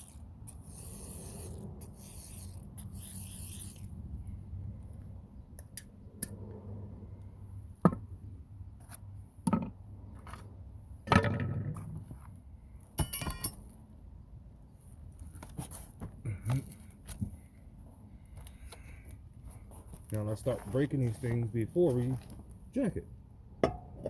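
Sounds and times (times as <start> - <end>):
low steady rumble: 0.0 - 15.4
ringing metallic clink: 13.0 - 13.6
metal tools clanking: 13.0 - 13.7.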